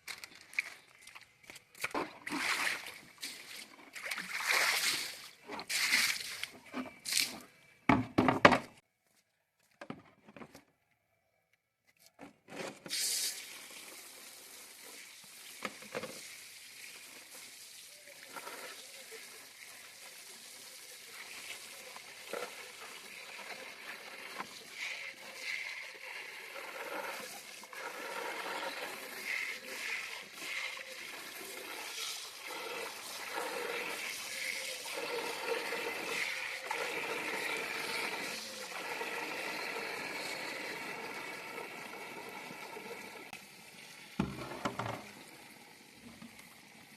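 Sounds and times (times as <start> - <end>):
water splashing: 0.4 - 7.3
water running steadily: 13.2 - 46.9.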